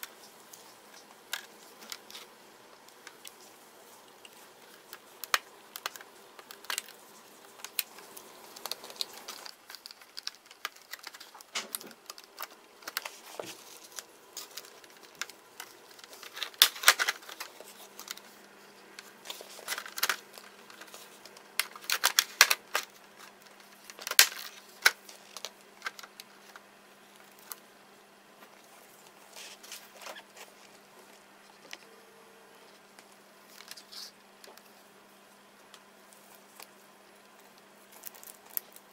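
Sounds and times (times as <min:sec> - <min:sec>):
plastic and metal parts clicking: 0:07.6 - 0:18.3, 0:19.3 - 0:26.6.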